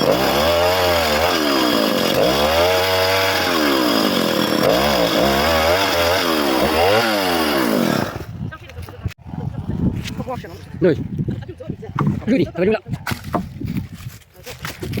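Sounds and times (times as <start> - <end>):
chainsaw cutting wood: 0.0 - 8.4.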